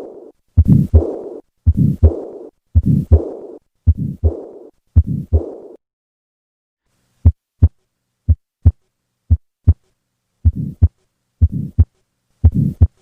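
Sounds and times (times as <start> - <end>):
harsh heart murmur: 0.0 - 5.8, 10.5 - 13.0
heartbeat through stethoscope: 0.0 - 5.8, 7.2 - 9.8, 10.4 - 13.0.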